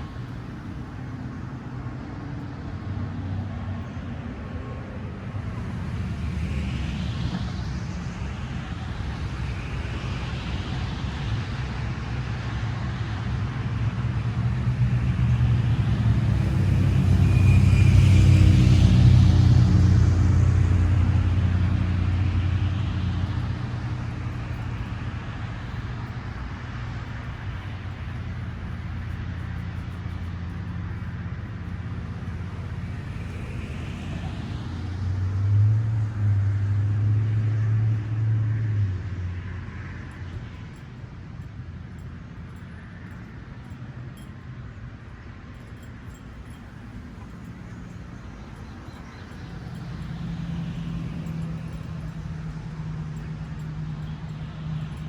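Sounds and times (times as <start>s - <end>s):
motor vehicle passing: 12.7s - 40.7s, 45.8s - 55.0s.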